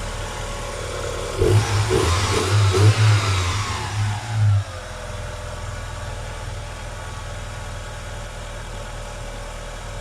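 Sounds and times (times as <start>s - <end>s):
car engine revving and idling: 0.0s - 8.0s.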